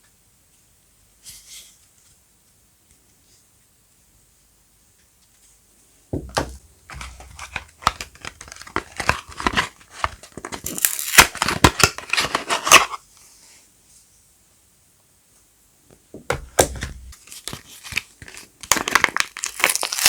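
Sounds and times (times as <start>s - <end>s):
packaging tearing and crinkling: 6.8s - 13.0s, 16.4s - 20.0s.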